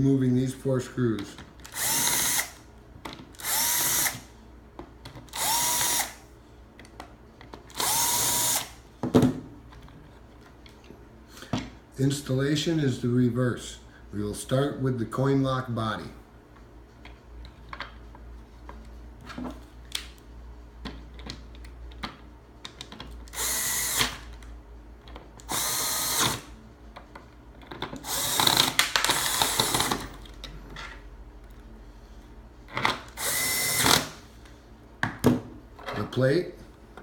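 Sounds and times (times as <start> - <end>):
cordless drill running: 1.6 - 2.6, 3.4 - 4.3, 5.3 - 6.2, 7.7 - 8.8, 23.3 - 24.2, 25.5 - 26.5, 28.0 - 30.0, 33.1 - 34.2.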